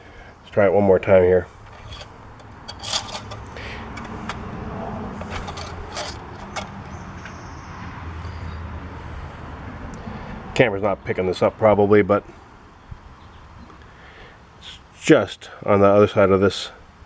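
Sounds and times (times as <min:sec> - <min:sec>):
dipstick clicking and scraping: 0:01.6 - 0:07.1.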